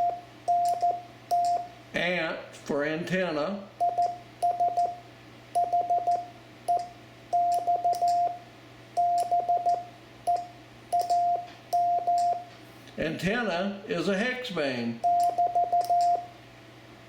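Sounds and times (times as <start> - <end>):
morse code beeps: 0.0 - 1.7, 3.8 - 5.0, 5.6 - 8.4, 9.0 - 12.5, 15.0 - 16.3.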